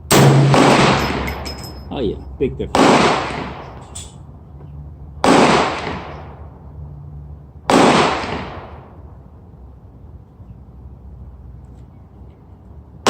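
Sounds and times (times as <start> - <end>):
rifle shots with echo: 0.1 - 1.5, 2.7 - 3.7, 5.2 - 6.2, 7.7 - 8.8.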